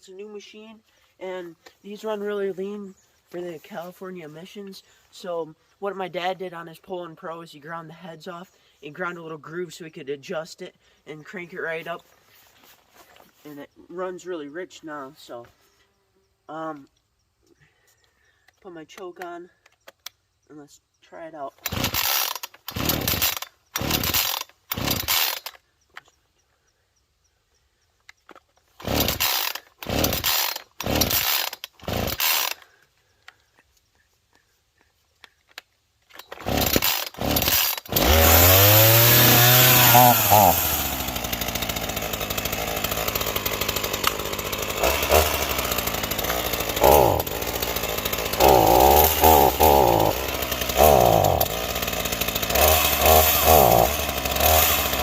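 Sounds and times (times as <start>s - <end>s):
chainsaw engine revving and idling: 21.5s - 25.6s, 28.7s - 32.8s, 36.1s - 55.0s
starter cord pulls: 21.6s - 26.1s, 28.2s - 32.6s, 35.2s - 55.0s.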